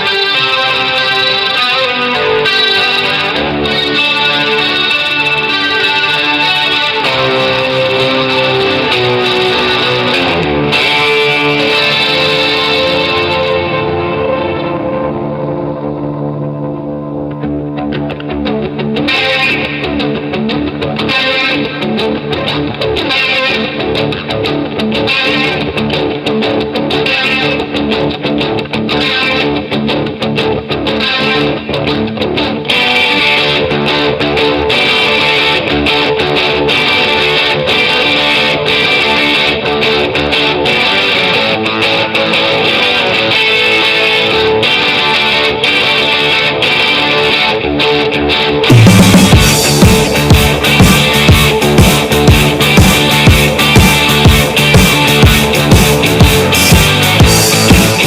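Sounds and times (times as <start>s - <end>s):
distorted electric guitar riff: 0.0s - 58.0s
steady drum beat: 48.7s - 58.0s.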